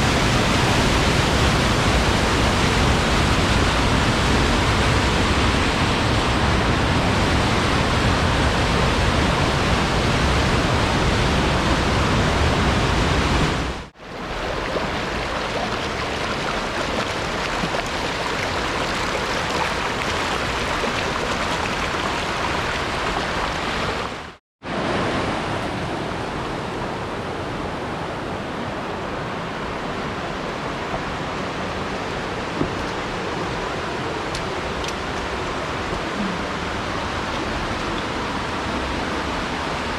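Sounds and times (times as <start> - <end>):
creek waterfall rushing: 0.0 - 39.9.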